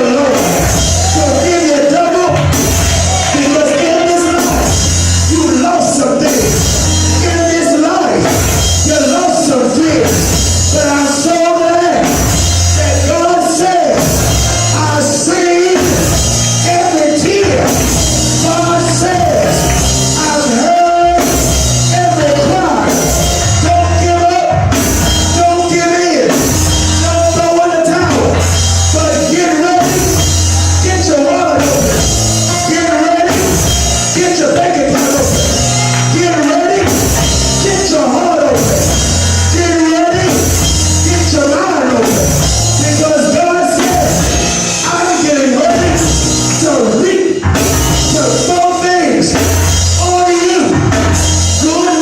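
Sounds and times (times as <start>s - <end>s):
band playing a song: 0.0s - 52.0s.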